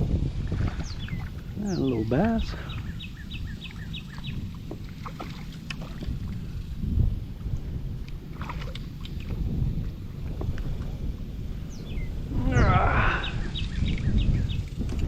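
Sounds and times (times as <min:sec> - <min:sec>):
low water wash: 0:00.0 - 0:15.0
bird chirping: 0:00.7 - 0:04.6, 0:11.6 - 0:14.7
water splashes and knocks: 0:04.1 - 0:06.4, 0:08.0 - 0:10.9.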